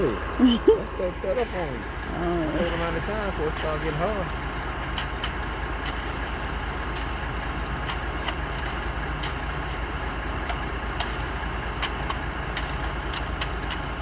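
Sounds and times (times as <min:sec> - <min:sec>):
diesel truck engine idling: 0:00.0 - 0:14.0.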